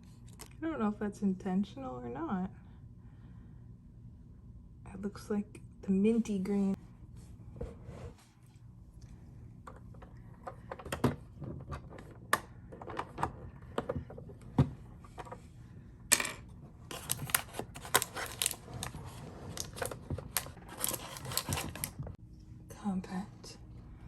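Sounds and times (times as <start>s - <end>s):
plastic accessories clicking: 16.9s - 18.6s
plastic packaging crinkling: 16.9s - 22.1s.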